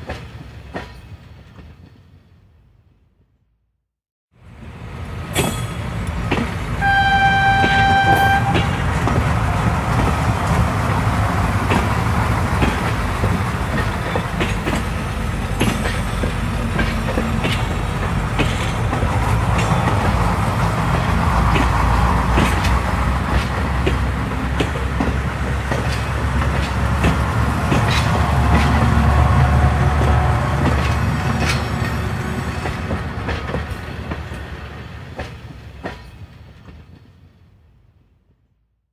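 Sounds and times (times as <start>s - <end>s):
moving train rumble: 4.4s - 38.3s
wheels clacking over rail joints: 5.3s - 37.0s
train horn toot: 6.8s - 8.8s.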